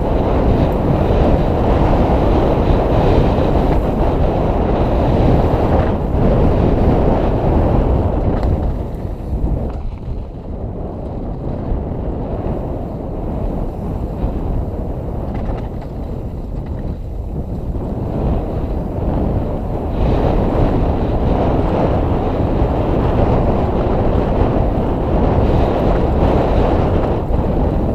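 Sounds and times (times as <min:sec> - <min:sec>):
bike tyres rolling on dirt: 0:00.0 - 0:27.9
wind rushing over microphone: 0:00.0 - 0:27.9.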